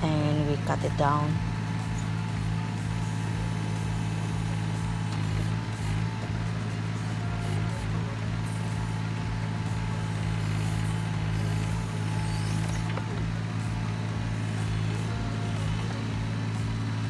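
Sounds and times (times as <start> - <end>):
excavator diesel engine: 0.0 - 17.0.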